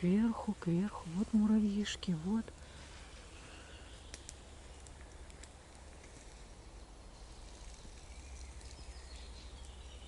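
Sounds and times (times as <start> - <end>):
low forest rumble: 0.0 - 10.0
faint clicks: 4.1 - 6.2.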